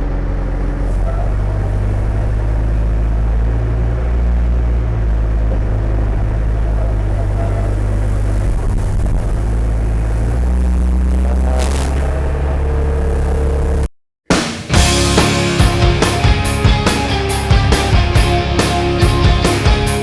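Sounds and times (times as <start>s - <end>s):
loader engine humming: 0.0s - 13.9s.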